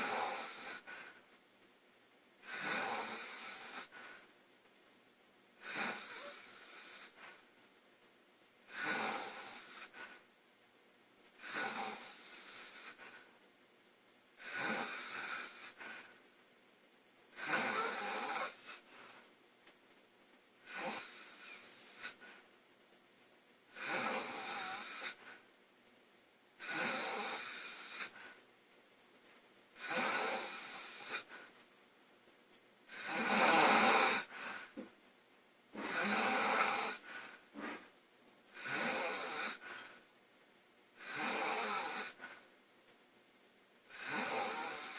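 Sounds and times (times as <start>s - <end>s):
girl snoring loudly: 0.0s - 1.1s, 2.4s - 4.0s, 5.6s - 7.2s, 8.7s - 10.1s, 11.4s - 13.2s, 14.4s - 16.0s, 17.4s - 18.8s, 20.6s - 22.2s, 23.7s - 25.2s, 26.6s - 28.2s, 29.8s - 31.4s, 32.9s - 34.6s, 35.7s - 37.8s, 38.6s - 39.8s, 41.0s - 42.3s, 43.9s - 44.9s.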